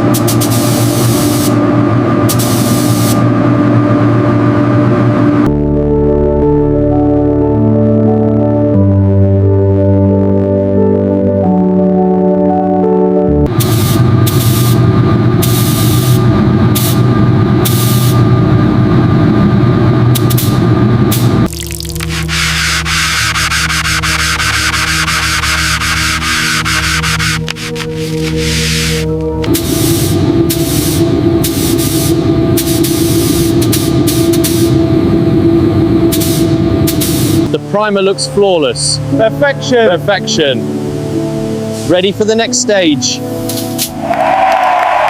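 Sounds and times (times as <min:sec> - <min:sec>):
spray gun hissing: 0:00.0 - 0:01.6, 0:02.3 - 0:03.2, 0:13.6 - 0:14.8, 0:15.4 - 0:16.2, 0:16.8 - 0:18.2, 0:22.1 - 0:34.8, 0:36.1 - 0:37.5
air compressor humming: 0:00.0 - 0:05.5, 0:13.5 - 0:37.8.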